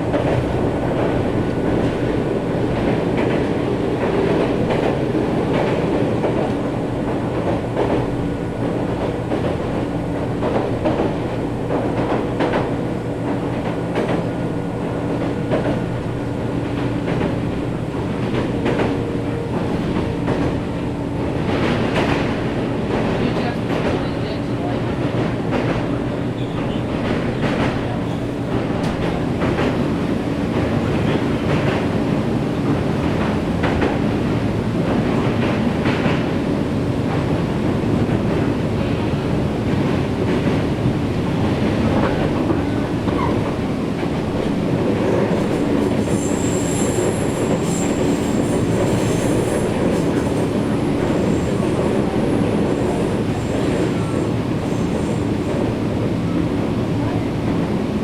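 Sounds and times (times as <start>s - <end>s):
electric train rumble and hum: 0.0s - 58.0s
rail-joint clicks: 7.4s - 34.2s, 39.7s - 55.7s
high-pitched wheel squeal: 46.1s - 49.4s.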